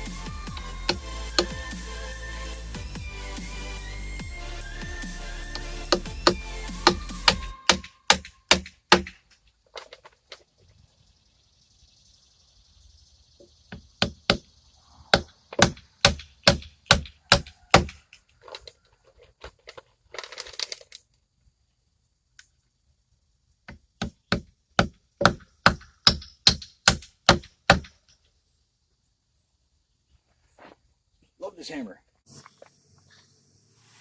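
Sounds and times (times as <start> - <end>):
hammer driving nails into wood: 5.9 - 9.2, 15.2 - 18.0, 23.7 - 28.0.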